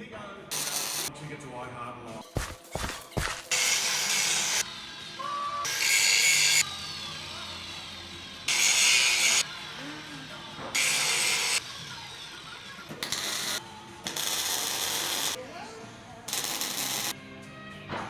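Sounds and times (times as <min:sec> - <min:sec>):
welding arc crackling on steel: 0:00.5 - 0:01.1, 0:02.4 - 0:04.7, 0:08.5 - 0:15.4, 0:16.3 - 0:17.2.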